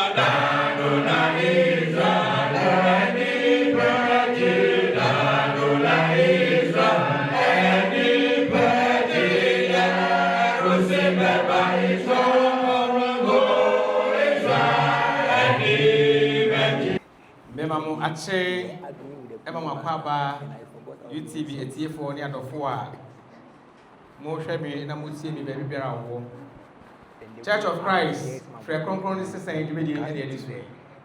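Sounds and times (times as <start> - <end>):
choir singing a hymn: 0.0 - 17.0.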